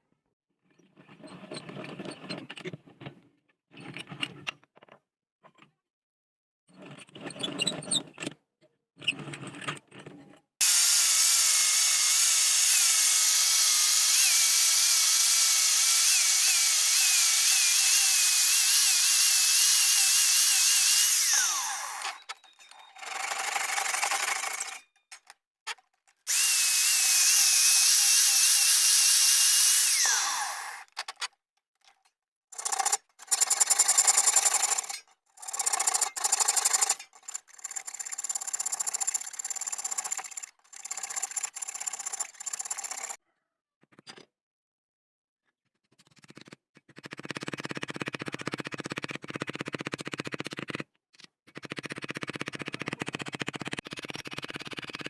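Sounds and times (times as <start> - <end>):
power tool running on steel blade: 10.6 - 24.8, 26.3 - 30.9.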